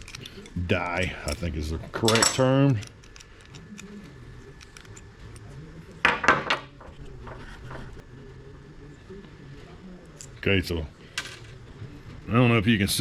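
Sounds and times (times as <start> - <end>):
small metal parts clinking: 0.0 - 0.6, 1.2 - 4.0.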